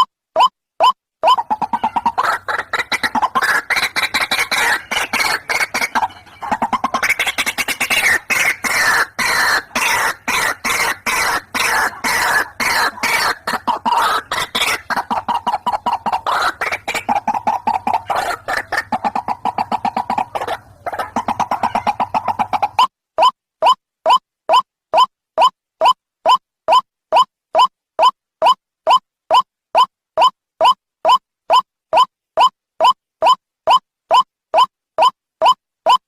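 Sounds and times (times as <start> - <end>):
waterhens calling: 1.2 - 22.9.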